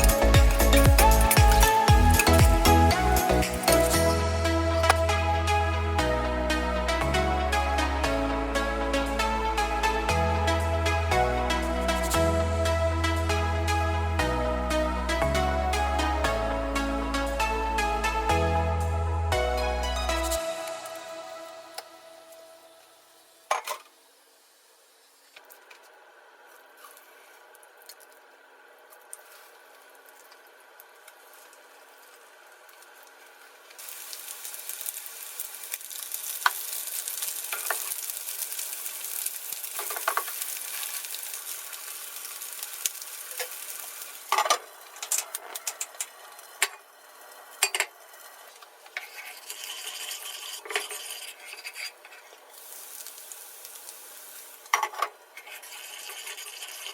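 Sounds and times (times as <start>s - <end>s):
food sizzling in frying pan: 20.3s - 25.9s, 29.2s - 56.9s
utensil scraping pan: 48.9s - 52.4s.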